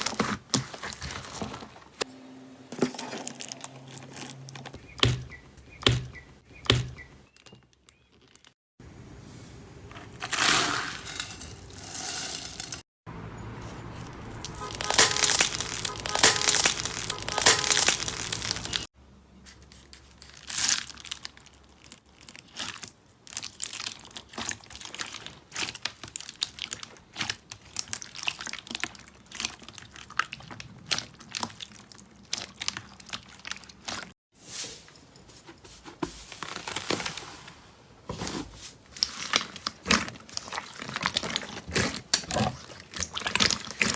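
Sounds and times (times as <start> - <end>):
slime crackling and popping: 14.4 - 18.9.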